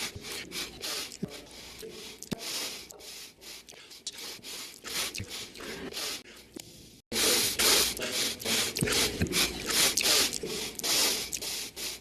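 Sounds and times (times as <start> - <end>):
man sniffing through nose: 0.0 - 12.0.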